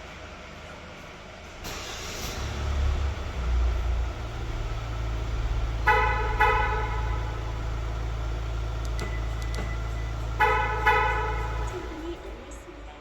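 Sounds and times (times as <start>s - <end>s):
car engine idling: 0.1s - 13.0s
car horn toots: 4.0s - 12.6s.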